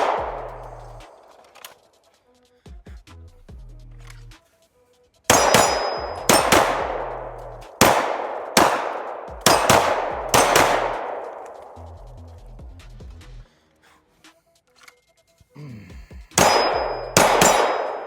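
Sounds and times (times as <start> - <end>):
pistol shots with metallic ringing: 0.0 - 1.6, 5.3 - 11.8, 16.4 - 18.0.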